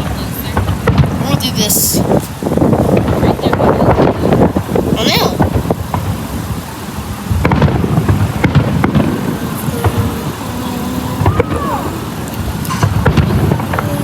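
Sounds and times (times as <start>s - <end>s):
distant fireworks popping: 0.0s - 14.0s
steady low rumble: 1.9s - 14.0s
firework whistle: 5.2s - 14.0s.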